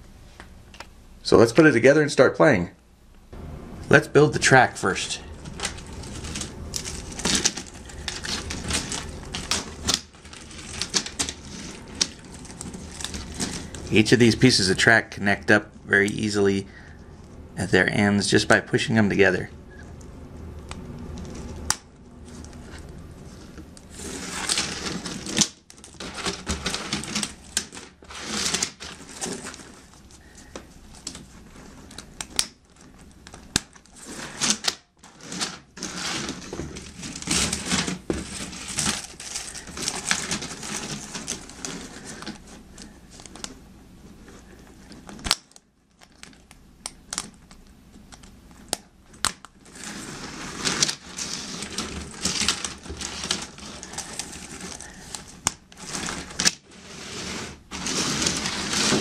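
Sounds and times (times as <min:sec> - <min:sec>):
plastic rustling and rattling: 0:05.2 - 0:14.6, 0:21.0 - 0:59.0.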